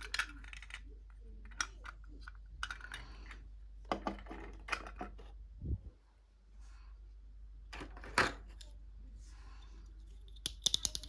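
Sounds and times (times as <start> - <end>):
plastic toy pieces clicking: 10.4 - 11.0.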